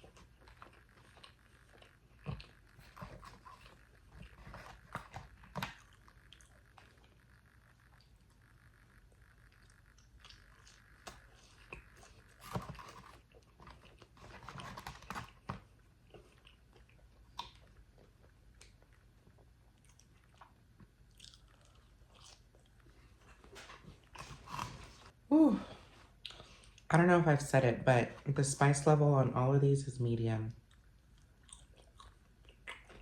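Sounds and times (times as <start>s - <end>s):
food crunches: 0.0s - 25.1s
chewing food: 0.0s - 25.2s, 26.1s - 26.9s, 30.6s - 33.0s.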